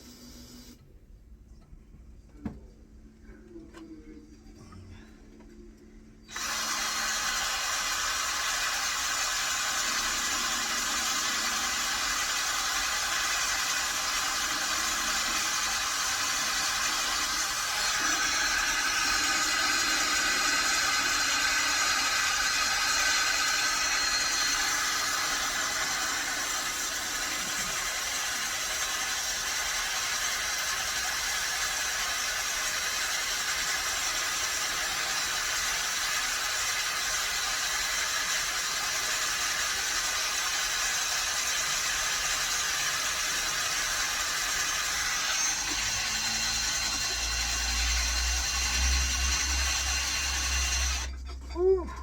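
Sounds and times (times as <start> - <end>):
electric drill boring through metal: 0.0 - 0.8, 6.3 - 51.4.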